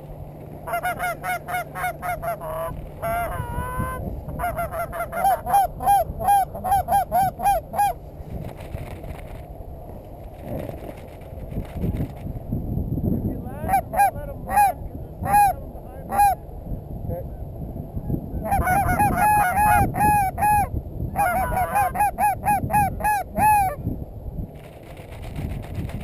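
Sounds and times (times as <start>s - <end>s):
low wind rumble: 0.0s - 26.0s
goose honking: 0.6s - 8.0s, 18.4s - 23.8s.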